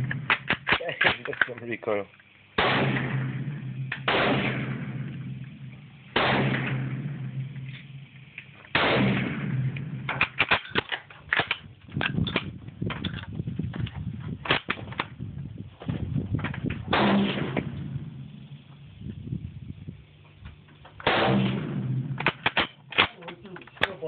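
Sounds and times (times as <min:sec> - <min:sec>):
rapid sharp cracks: 0:00.0 - 0:01.8, 0:02.6 - 0:05.0, 0:07.6 - 0:12.2, 0:21.0 - 0:24.0
gunshots echoing: 0:02.6 - 0:05.4, 0:06.1 - 0:08.1, 0:08.7 - 0:10.7, 0:16.9 - 0:18.3, 0:21.0 - 0:23.2.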